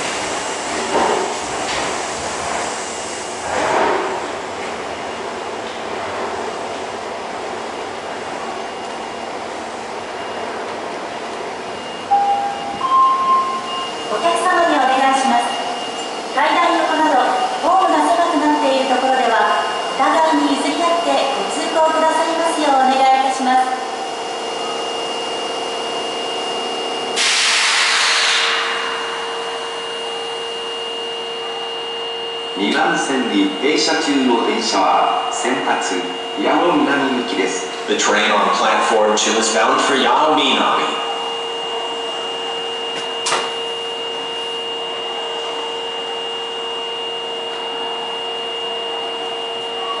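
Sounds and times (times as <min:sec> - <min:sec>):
train air conditioning hum and hiss: 0:00.0 - 0:08.6, 0:27.2 - 0:41.2
steady hum with high whine: 0:06.4 - 0:50.0
compressed air hissing: 0:27.2 - 0:28.7.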